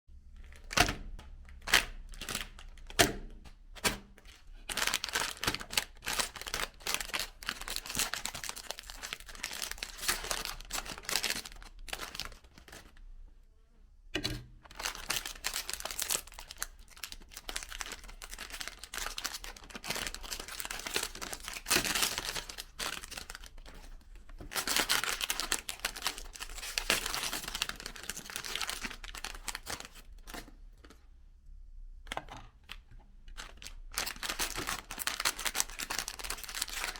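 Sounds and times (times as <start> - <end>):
crinkling and tearing: 14.7 - 30.6, 33.3 - 36.9.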